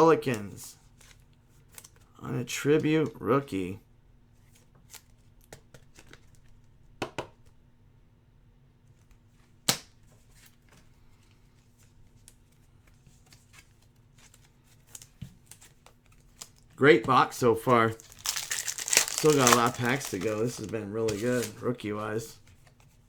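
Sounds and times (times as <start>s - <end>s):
card snapping: 18.0s - 21.6s
trading cards sliding and ticking: 19.2s - 22.3s.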